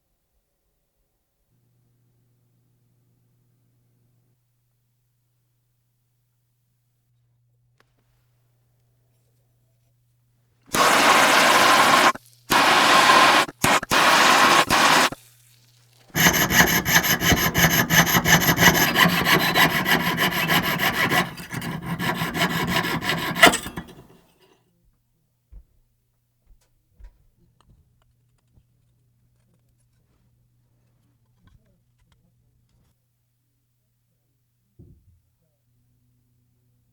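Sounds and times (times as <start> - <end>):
hand sawing scraping strokes: 10.7 - 15.2, 16.2 - 24.2.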